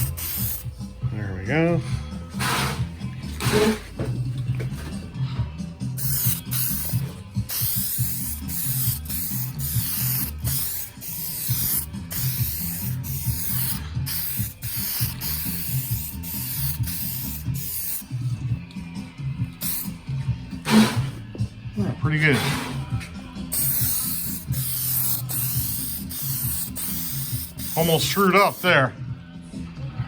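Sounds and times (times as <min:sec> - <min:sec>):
spray paint hissing: 0:00.0 - 0:00.8, 0:02.4 - 0:03.8, 0:06.0 - 0:18.2, 0:19.6 - 0:20.0, 0:20.7 - 0:21.1, 0:23.5 - 0:28.7.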